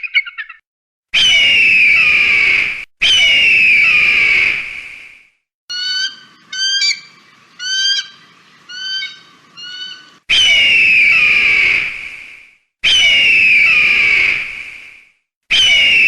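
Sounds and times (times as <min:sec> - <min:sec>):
bird of prey screaming: 0:01.2 - 0:04.6, 0:05.7 - 0:12.0, 0:12.8 - 0:14.5, 0:15.5 - 0:16.0
high chirping bird calls: 0:05.7 - 0:11.5.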